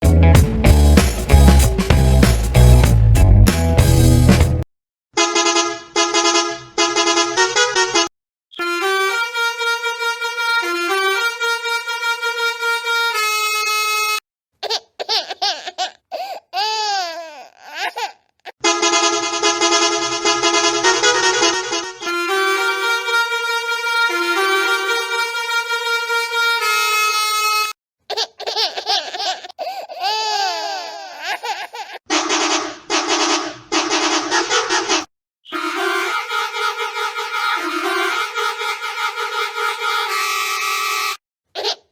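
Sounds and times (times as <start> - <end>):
musical bus horn tune: 3.8 - 14.2, 18.6 - 27.8, 32.1 - 41.2
cartoonish laugh-like warbling: 35.6 - 36.7.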